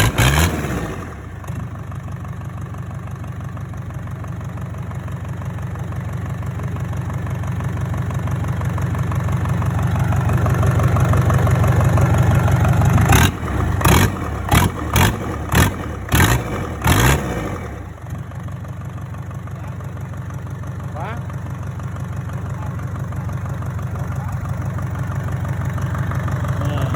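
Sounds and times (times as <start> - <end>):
loud engine bursts: 0.0 - 1.7, 11.3 - 18.0
diesel engine running: 0.0 - 26.9.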